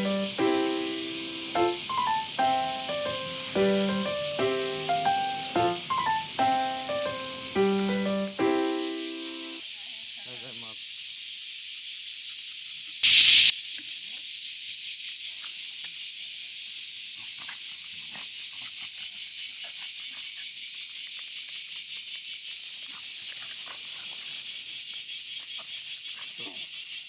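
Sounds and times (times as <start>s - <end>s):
cicadas buzzing: 0.0s - 27.0s
loud burst of noise: 13.0s - 13.5s.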